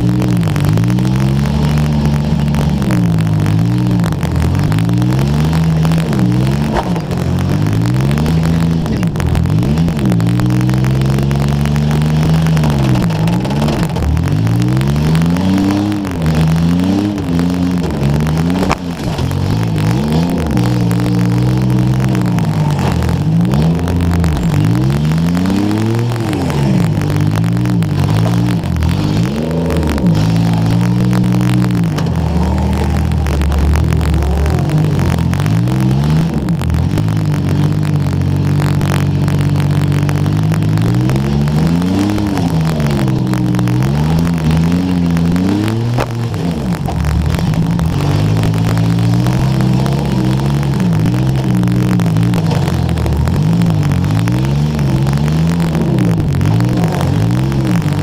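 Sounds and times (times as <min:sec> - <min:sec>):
car engine revving: 0:00.0 - 0:58.0.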